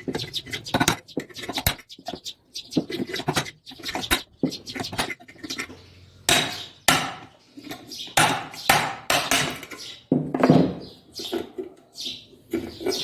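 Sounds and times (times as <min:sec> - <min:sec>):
hammer striking metal: 0:06.3 - 0:07.3, 0:08.2 - 0:09.7.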